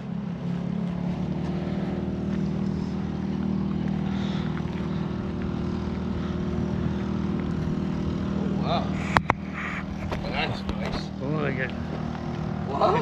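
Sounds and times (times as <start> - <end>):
boat engine running: 0.0 - 13.0.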